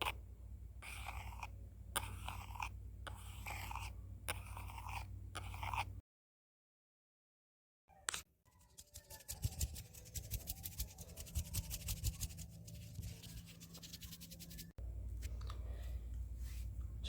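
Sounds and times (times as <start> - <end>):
scratchy sketching strokes: 0.8 - 5.9, 8.5 - 14.8.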